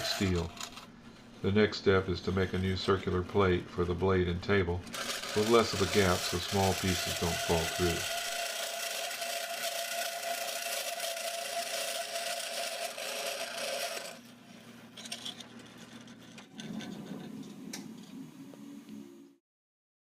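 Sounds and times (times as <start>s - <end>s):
band saw cutting metal: 0.0s - 0.8s, 4.8s - 14.2s.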